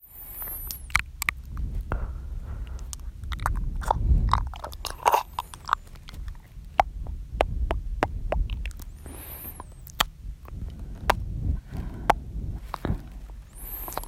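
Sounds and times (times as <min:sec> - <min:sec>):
soft breathing: 0:00.0 - 0:14.0
tongue and lip clicks: 0:00.2 - 0:14.0.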